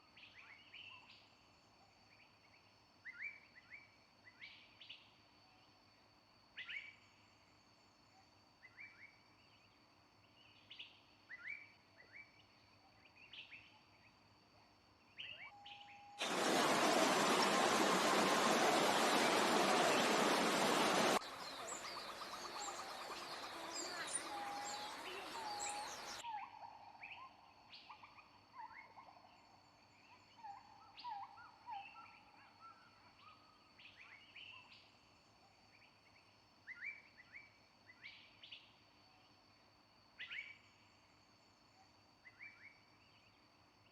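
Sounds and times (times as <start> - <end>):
birds chirping: 16.2 - 26.2
loud even hiss: 16.2 - 26.2.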